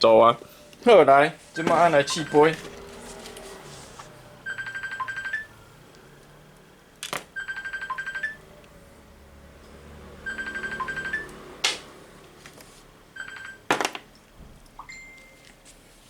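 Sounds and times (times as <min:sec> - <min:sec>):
transmitter high beeps: 0:02.0 - 0:02.6, 0:10.3 - 0:11.3.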